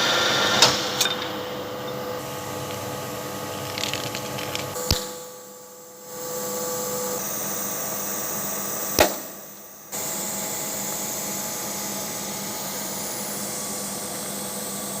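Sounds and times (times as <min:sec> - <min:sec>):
lathe humming: 0:06.0 - 0:15.0.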